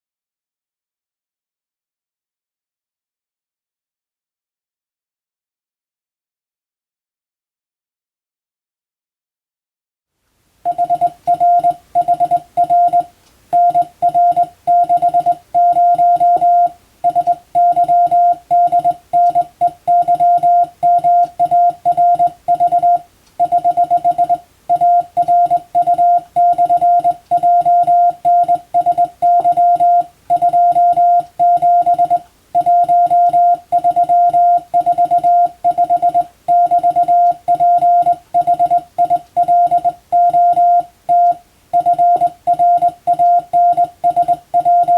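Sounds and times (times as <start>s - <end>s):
morse code beeps: 10.7s - 44.9s.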